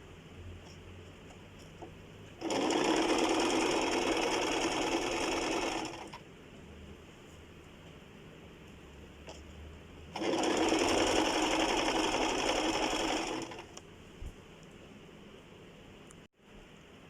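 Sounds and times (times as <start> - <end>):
sewing machine stitching: 2.4 - 6.2, 10.1 - 13.8.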